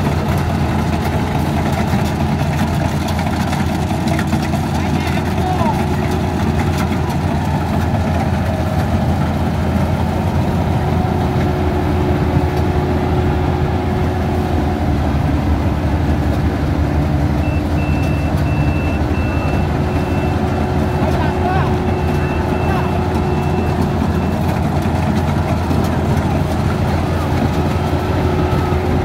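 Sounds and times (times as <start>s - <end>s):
combine harvester engine drone: 0.0s - 29.0s
high-pitched beeps: 17.4s - 21.1s.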